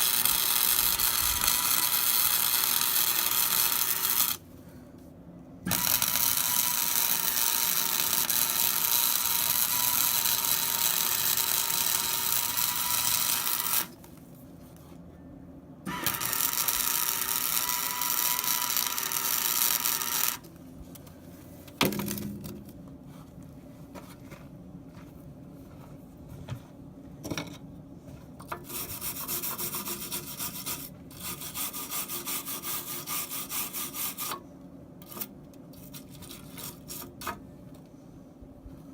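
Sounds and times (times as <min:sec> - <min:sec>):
welding arc crackling hiss: 0:00.0 - 0:04.4, 0:05.7 - 0:13.9, 0:16.0 - 0:20.4.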